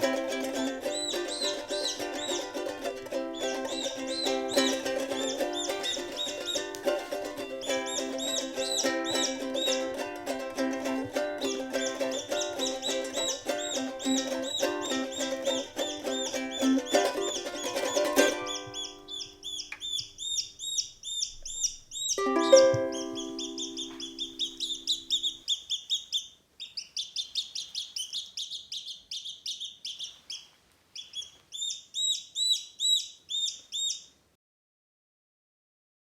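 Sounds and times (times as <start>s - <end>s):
strummed ukulele chord: 0.0s - 19.0s, 22.2s - 25.0s
chick peeping: 0.0s - 34.2s.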